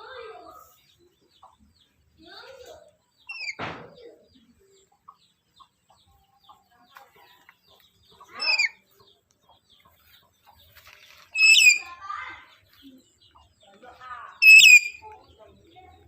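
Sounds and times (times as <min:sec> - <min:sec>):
parrot calling: 0:03.3 - 0:03.6, 0:08.3 - 0:08.8, 0:11.3 - 0:12.0, 0:14.4 - 0:15.0.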